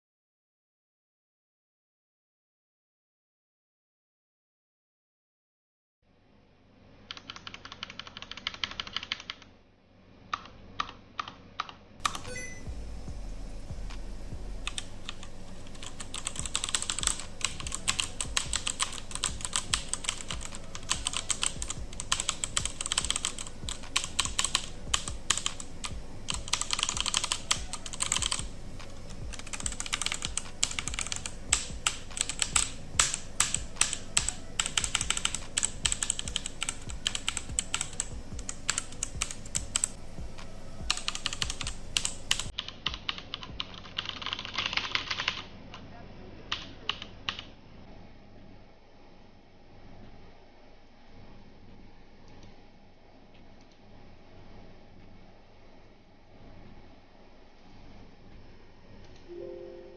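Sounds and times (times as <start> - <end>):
mechanical keyboard typing: 7.1 - 9.5, 10.4 - 12.6, 14.6 - 40.0, 40.8 - 45.4, 46.5 - 47.4.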